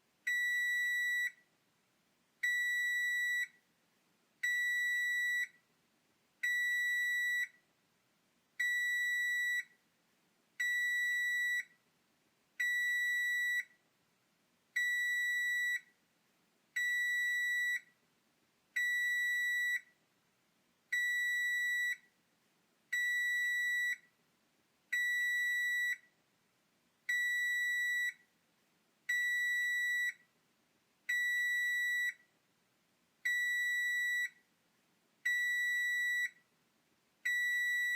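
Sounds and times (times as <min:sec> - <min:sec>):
oven timer beeping: 0:02.4 - 0:03.6, 0:04.4 - 0:05.6, 0:06.4 - 0:07.6, 0:08.6 - 0:09.7, 0:10.6 - 0:11.7, 0:12.6 - 0:13.8, 0:14.8 - 0:15.9, 0:16.8 - 0:17.9, 0:18.8 - 0:20.0, 0:20.9 - 0:22.1, 0:22.9 - 0:24.1, 0:27.1 - 0:28.2, 0:29.1 - 0:30.2, 0:31.1 - 0:32.2, 0:33.2 - 0:34.4, 0:35.2 - 0:36.4, 0:37.2 - 0:37.9.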